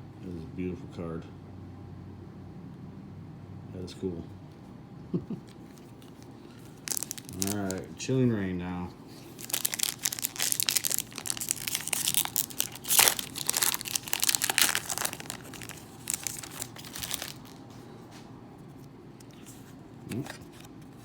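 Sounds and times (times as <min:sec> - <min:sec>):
foil wrapper crinkling and tearing: 0:05.7 - 0:07.9, 0:09.1 - 0:17.7.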